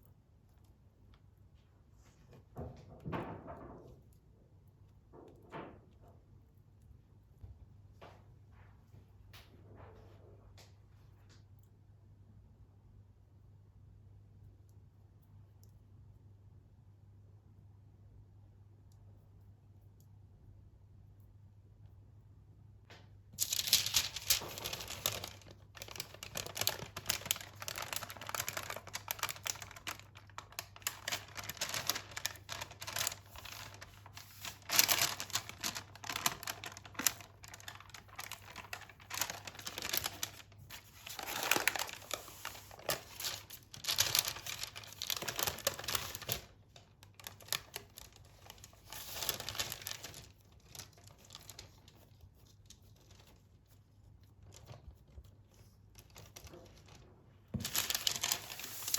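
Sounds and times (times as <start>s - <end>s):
crinkling and rustling: 22.9s - 58.9s.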